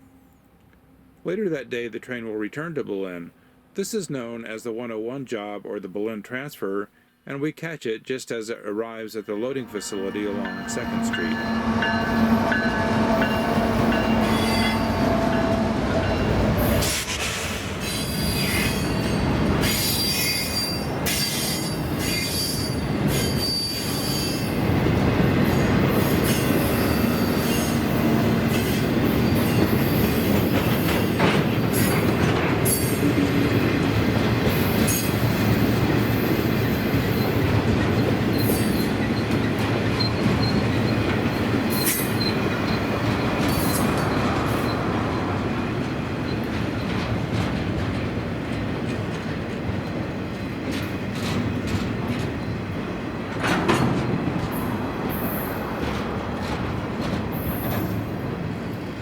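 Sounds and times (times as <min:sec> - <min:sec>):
freight train rolling past: 0:09.2 - 0:59.0
steel wheels squealing on rails: 0:09.4 - 0:47.6, 0:53.4 - 0:59.0
wheels clicking over rail joints: 0:45.7 - 0:58.7.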